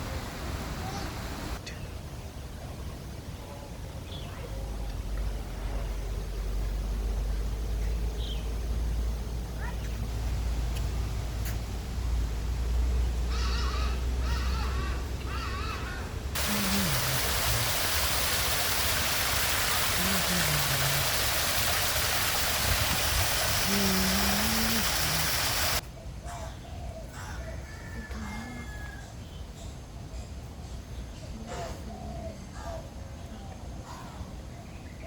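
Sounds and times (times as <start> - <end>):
birds wavering calls: 13.3 - 25.8.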